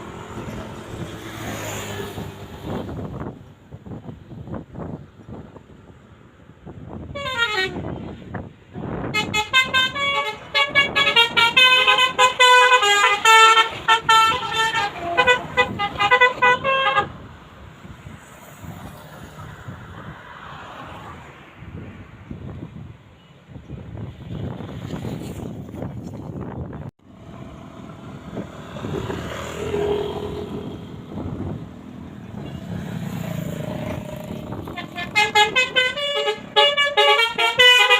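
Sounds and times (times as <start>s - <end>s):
passing traffic rumble: 0.0s - 37.9s
musical bus horn melody: 7.1s - 17.2s, 34.4s - 37.9s.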